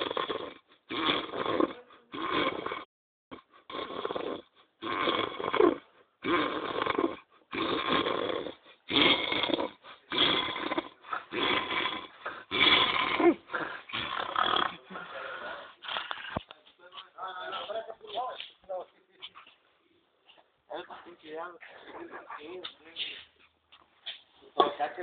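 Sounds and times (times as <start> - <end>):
man snoring: 0.0 - 2.9, 3.7 - 16.4.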